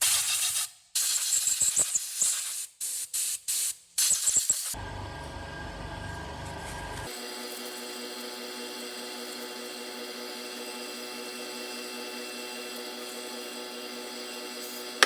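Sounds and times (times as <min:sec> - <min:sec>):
aerosol spray hissing bursts: 0:00.0 - 0:04.8.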